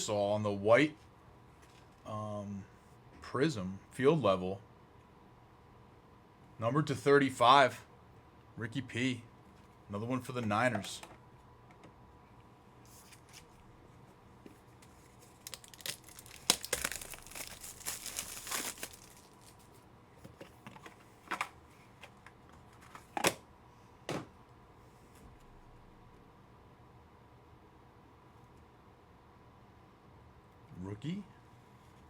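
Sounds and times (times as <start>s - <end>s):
foil wrappers crinkling and tearing: 14.9s - 19.8s.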